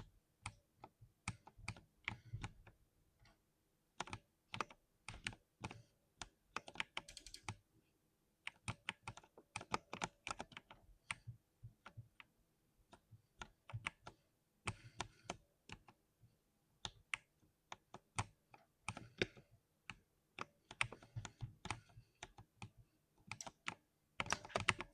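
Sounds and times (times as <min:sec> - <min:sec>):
keyboard key clicks: 0:06.9 - 0:07.6.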